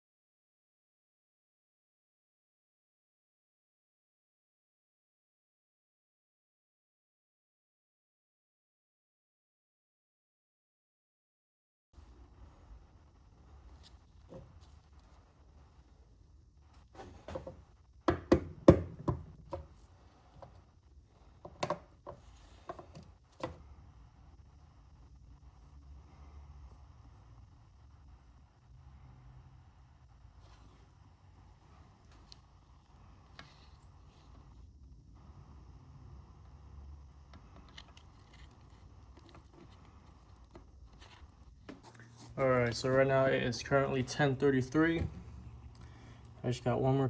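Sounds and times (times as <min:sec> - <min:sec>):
faint low hum: 0:12.0 - 0:47.0.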